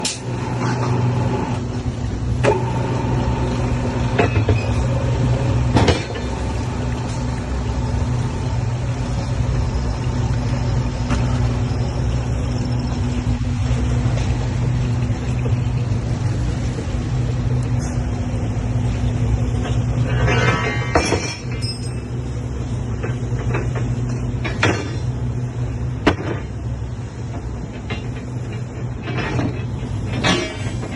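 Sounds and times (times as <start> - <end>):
machine motor hum: 0.0 - 20.0.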